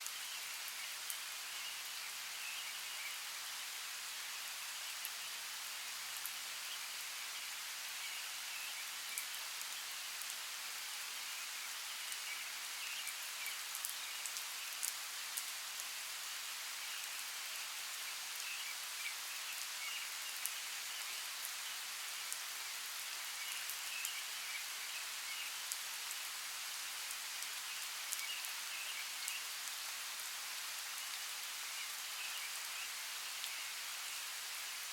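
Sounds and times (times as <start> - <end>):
steady rain hiss: 0.0 - 34.9
raindrops ticking close by: 12.0 - 16.0.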